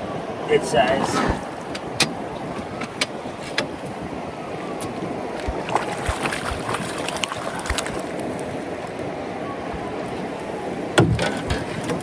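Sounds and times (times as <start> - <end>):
wind noise: 0.0 - 8.4
water lapping against boat hull: 1.0 - 9.0.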